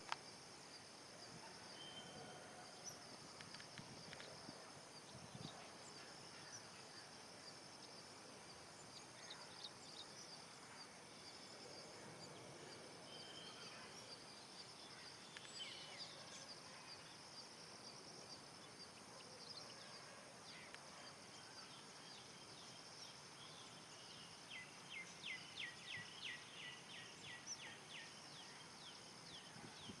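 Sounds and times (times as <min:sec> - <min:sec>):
steady high hiss: 0:00.0 - 0:30.0.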